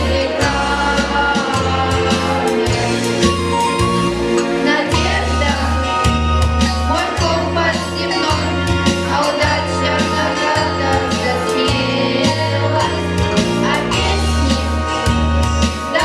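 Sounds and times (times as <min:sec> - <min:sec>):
instrumental backing with beat: 0:00.0 - 0:16.0
person singing: 0:04.4 - 0:06.0, 0:06.6 - 0:15.0.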